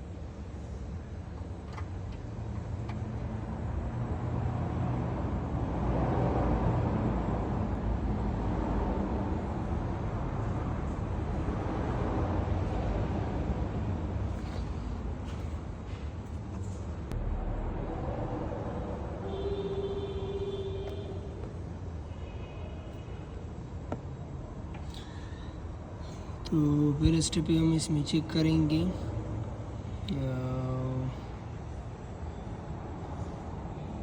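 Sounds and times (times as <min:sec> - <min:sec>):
low vehicle rumble: 0:00.2 - 0:22.1.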